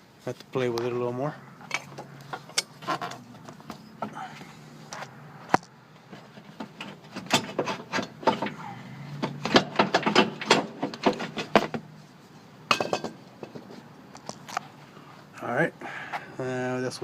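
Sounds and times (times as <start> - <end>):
metal knocks and clunks: 5.5 - 8.6, 9.2 - 11.8, 12.7 - 13.8.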